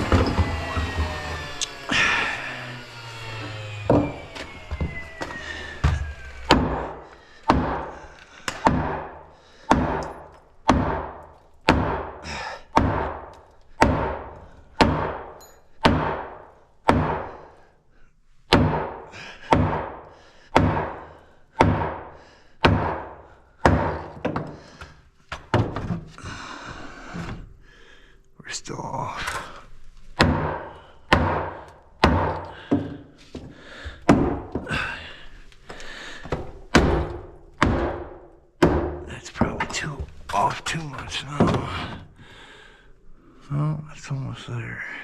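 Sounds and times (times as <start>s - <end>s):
hammer blows on wood: 18.5s - 24.2s.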